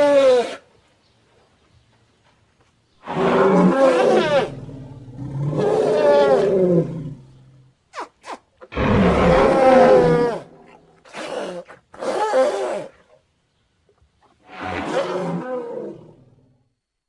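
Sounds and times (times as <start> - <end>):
person imitating mammoth roars: 8.7 - 10.8.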